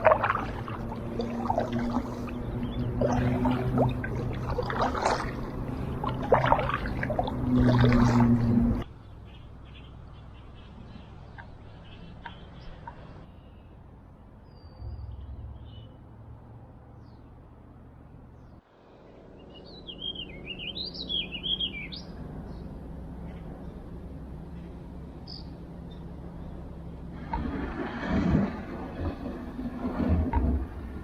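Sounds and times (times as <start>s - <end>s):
water splashing around paddle: 0.0s - 8.9s, 26.0s - 31.0s
low steady hum: 0.0s - 31.0s
faint bird chirps: 19.4s - 23.5s.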